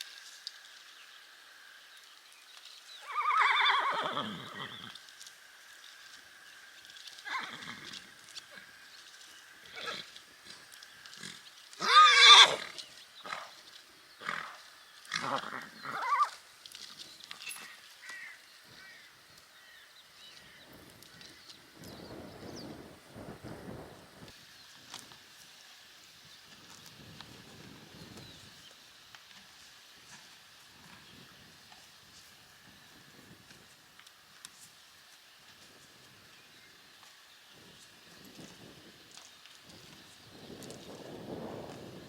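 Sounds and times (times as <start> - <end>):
horses whinnying: 3.0 - 5.0, 7.2 - 8.8, 9.6 - 10.2, 11.2 - 13.5, 14.2 - 16.4.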